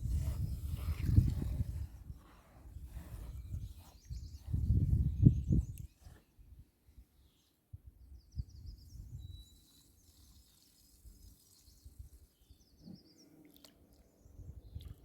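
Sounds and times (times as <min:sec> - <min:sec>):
bird chirping: 0:07.2 - 0:15.0.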